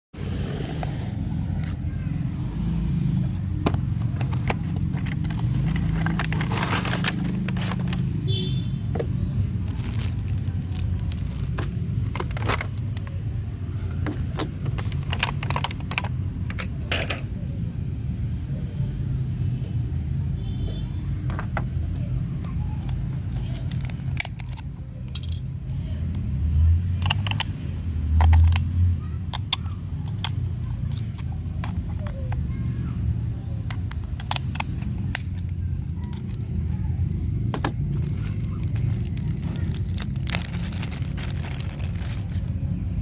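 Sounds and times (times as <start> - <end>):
plastic packaging handling: 3.6 - 13.2, 37.6 - 42.7.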